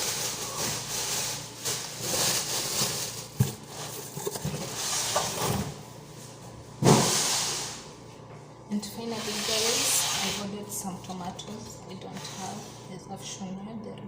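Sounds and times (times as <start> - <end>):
vegetable packaging rustling: 0.0 - 5.6.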